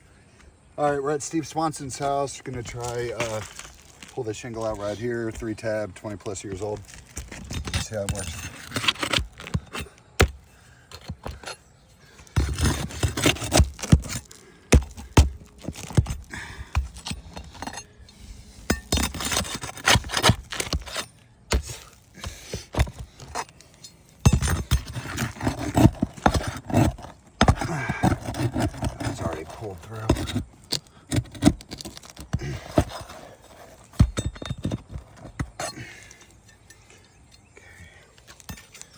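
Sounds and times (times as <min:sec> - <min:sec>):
tool scraping under shingles: 0:00.4 - 0:38.9.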